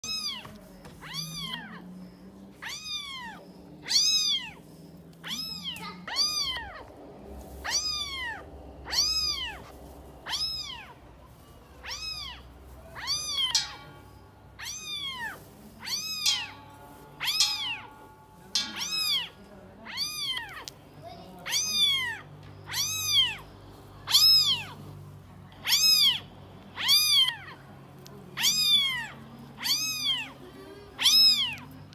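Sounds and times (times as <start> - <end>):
cat meowing: 0.0 - 1.9, 2.6 - 4.6, 5.2 - 6.9, 7.6 - 11.0, 11.8 - 13.7, 14.6 - 16.6, 17.2 - 17.9, 18.8 - 20.8, 21.4 - 23.4, 24.1 - 24.8, 25.6 - 27.6, 28.4 - 30.4, 31.0 - 31.7.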